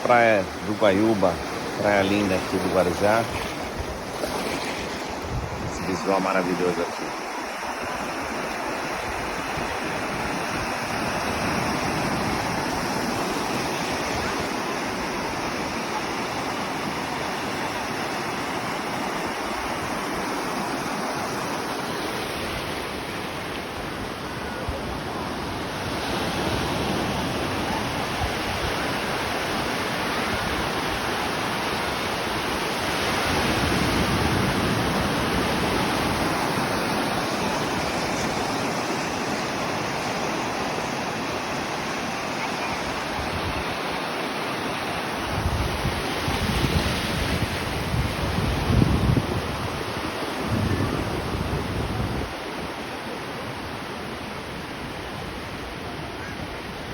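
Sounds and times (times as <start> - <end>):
ocean surf breaking on sand: 0.0 - 56.9
wind on microphone: 3.3 - 6.0, 45.2 - 52.7.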